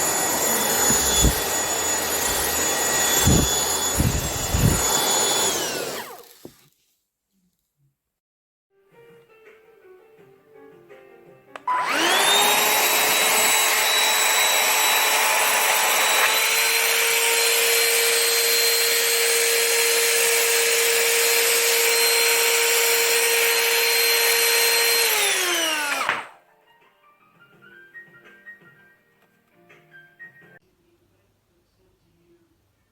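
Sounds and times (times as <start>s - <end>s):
handheld vacuum motor whine: 0.0s - 6.5s, 11.6s - 26.4s.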